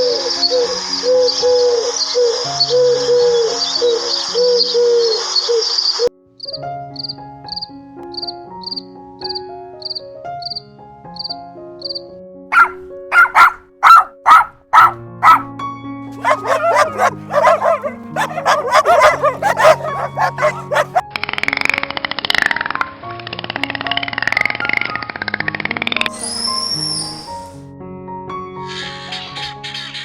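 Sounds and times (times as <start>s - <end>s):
background music: 11.2s - 21.0s
dog barking: 12.5s - 15.5s, 16.1s - 21.0s
bird cooing: 16.2s - 21.0s.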